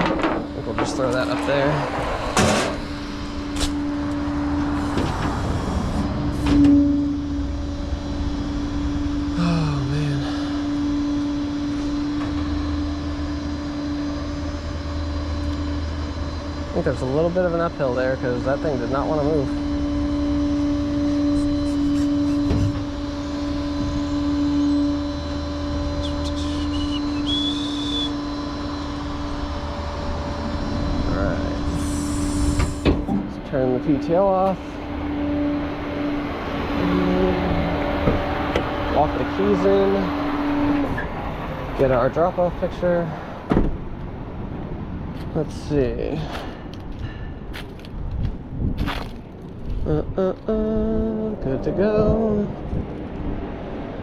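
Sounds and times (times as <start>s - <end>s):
metal clanks: 0.0s - 1.6s
hydraulic pump whine: 0.0s - 54.0s
truck engine humming: 0.0s - 54.0s
short high squeaks: 19.6s - 29.6s.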